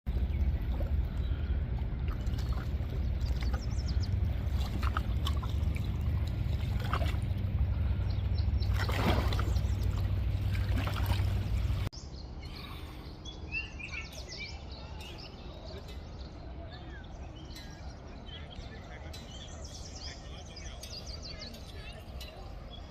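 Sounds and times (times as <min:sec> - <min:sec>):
lake water lapping: 0:00.1 - 0:11.9
low rumble: 0:00.1 - 0:11.9
small birds chirping: 0:00.1 - 0:22.9.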